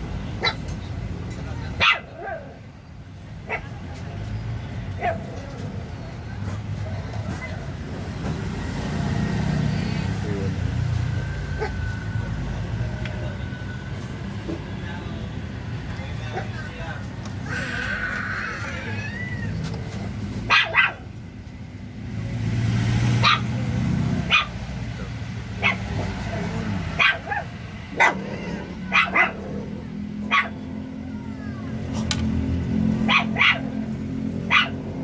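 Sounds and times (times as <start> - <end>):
dog barking: 0.4 - 0.7, 1.8 - 2.6, 3.5 - 3.8, 5.0 - 5.4, 11.6 - 11.8, 20.5 - 21.1, 23.2 - 24.7, 25.6 - 26.2, 26.8 - 30.7, 33.0 - 35.0.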